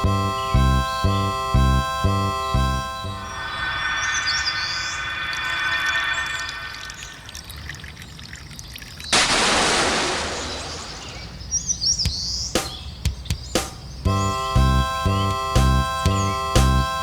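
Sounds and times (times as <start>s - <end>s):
level crossing alarm ringing: 0.0s - 6.9s, 14.1s - 17.0s
birds chirping: 0.0s - 17.0s
sudden rush of noise: 3.2s - 7.6s
sharp knocks: 12.0s - 14.2s.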